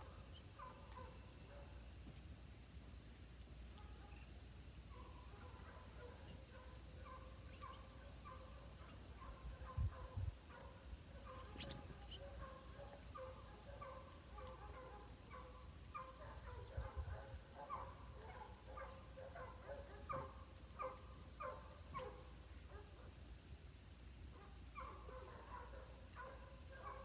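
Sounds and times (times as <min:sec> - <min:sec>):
faint bird calls: 0:11.2 - 0:14.0.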